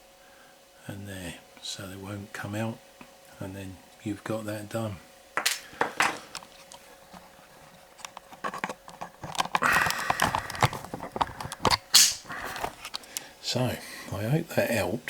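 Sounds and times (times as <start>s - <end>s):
plastic connectors clicking and rattling: 8.0s - 13.2s
sharp click: 11.6s - 12.3s.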